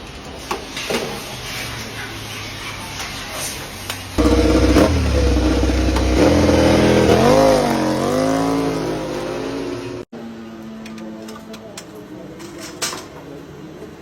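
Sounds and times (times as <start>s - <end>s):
motorcycle engine revving: 4.2s - 10.1s.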